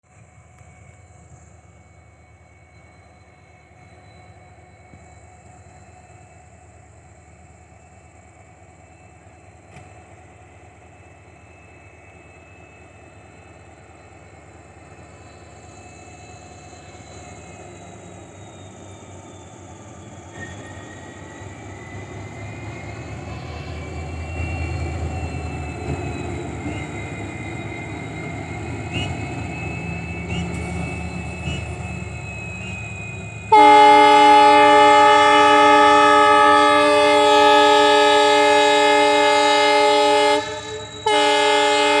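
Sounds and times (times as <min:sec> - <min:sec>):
locomotive rumble: 0:19.6 - 0:42.0
locomotive horn blast: 0:33.5 - 0:42.0.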